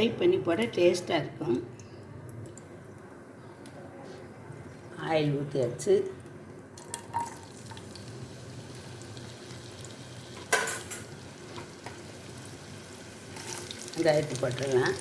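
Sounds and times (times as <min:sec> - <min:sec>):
oil sizzling in a pan: 0:06.8 - 0:15.0.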